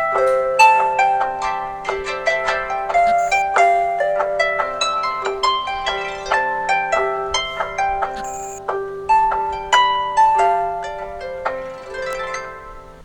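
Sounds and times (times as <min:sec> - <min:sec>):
plucked harp-like ringtone melody: 0:00.0 - 0:13.0.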